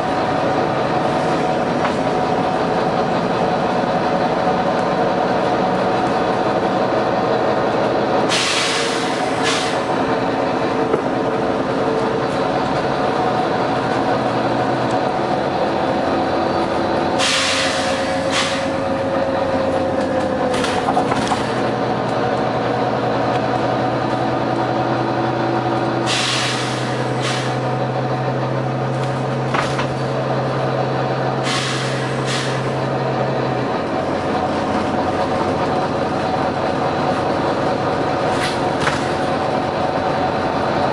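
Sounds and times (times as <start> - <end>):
bus engine running: 0.0 - 40.9
air brake hisses: 8.3 - 9.9, 17.2 - 18.8, 26.0 - 27.6, 31.4 - 32.8.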